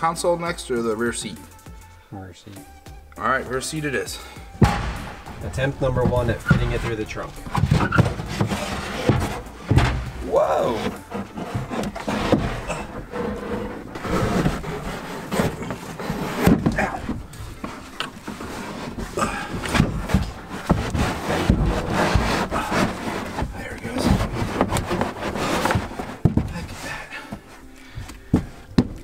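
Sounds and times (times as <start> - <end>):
irregular knocks: 4.6 - 18.3, 28.3 - 29.0
panel scraping against car body: 4.6 - 27.6.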